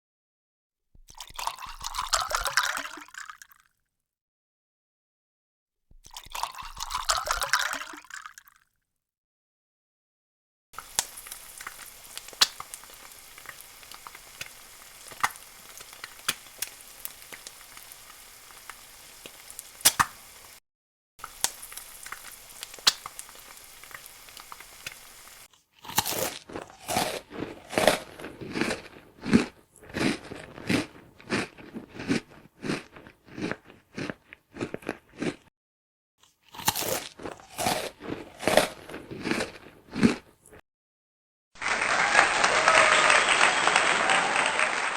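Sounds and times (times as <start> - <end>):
crunching of crisp food: 10.8 - 20.6, 21.2 - 35.5, 36.2 - 40.6
food sizzling in hot fat: 10.8 - 20.6, 21.2 - 32.8.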